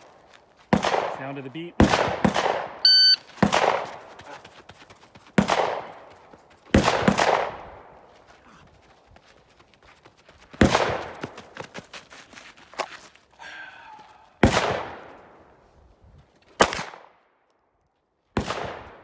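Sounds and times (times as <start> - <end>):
pistol shots with echo: 0.7 - 2.8, 3.4 - 3.8, 6.8 - 7.6, 18.4 - 19.0.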